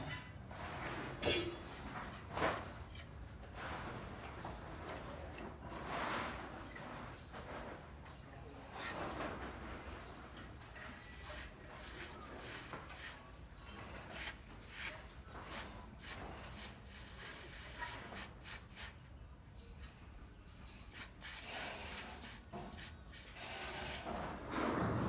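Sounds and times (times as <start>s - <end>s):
hand tool scraping a surface: 0.6s - 7.3s, 11.0s - 18.9s, 20.9s - 24.4s.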